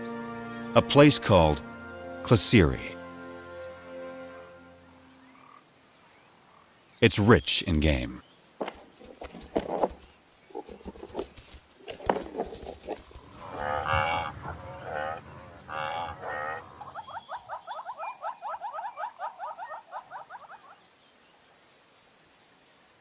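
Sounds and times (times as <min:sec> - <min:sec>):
wavering drawn-out animal calls: 0:10.5 - 0:20.8
short rising animal notes: 0:12.5 - 0:18.8.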